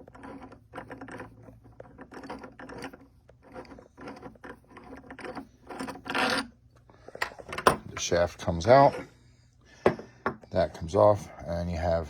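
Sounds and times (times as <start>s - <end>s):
metal scrape: 0.0s - 7.1s.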